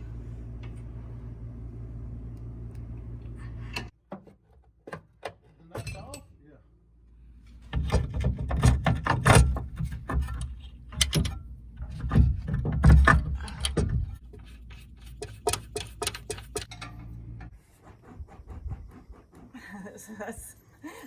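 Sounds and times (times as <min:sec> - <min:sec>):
metal clanks and knocks: 0:03.8 - 0:06.3, 0:07.6 - 0:14.3, 0:15.0 - 0:17.5.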